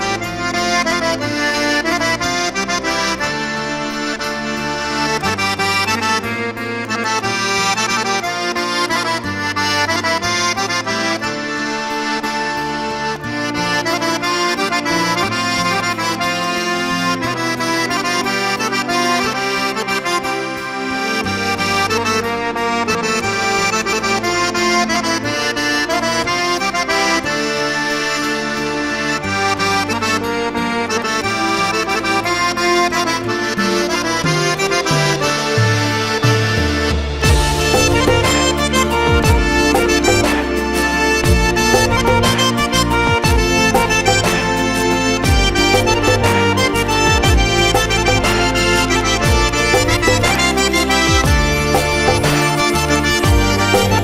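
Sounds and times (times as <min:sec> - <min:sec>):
sustained chords: 0:00.0 - 0:54.0
bass line: 0:28.8 - 0:54.0.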